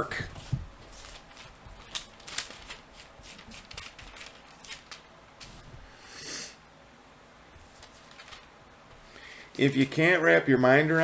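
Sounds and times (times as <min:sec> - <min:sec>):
pages rustling and clicking: 0:00.4 - 0:05.6, 0:07.6 - 0:08.5, 0:09.5 - 0:10.2.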